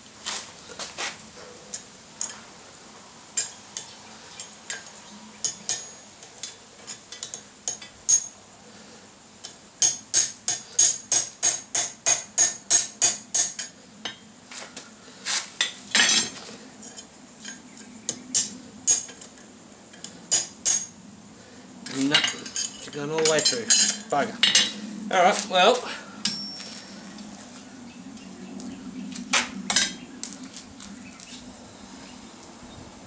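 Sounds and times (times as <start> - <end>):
hammer striking steel on anvil: 9.8 - 14.2, 20.3 - 20.9, 26.2 - 26.7.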